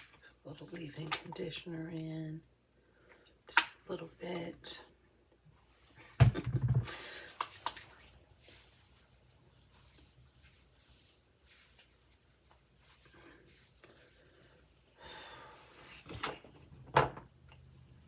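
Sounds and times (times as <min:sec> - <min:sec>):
hands rubbing wet hair: 0:06.9 - 0:15.0.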